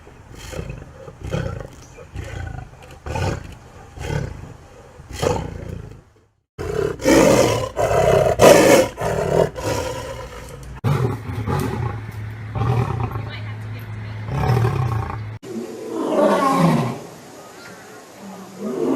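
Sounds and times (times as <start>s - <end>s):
lion roaring: 0.3s - 6.0s, 6.6s - 13.2s, 14.3s - 17.1s.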